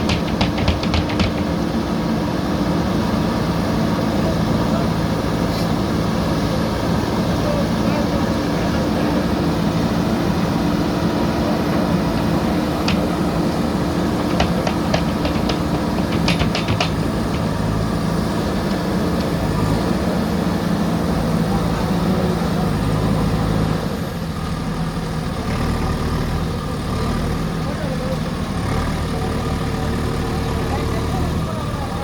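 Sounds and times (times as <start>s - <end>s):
diesel engine running: 0.0s - 32.0s
sharp metallic clanks: 12.8s - 17.9s.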